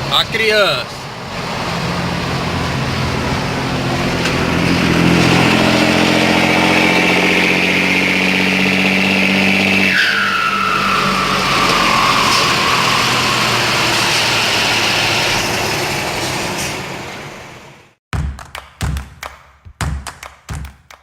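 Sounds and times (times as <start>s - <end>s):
diesel truck engine rumbling: 0.0s - 18.0s
high whine sliding down: 10.2s - 16.2s.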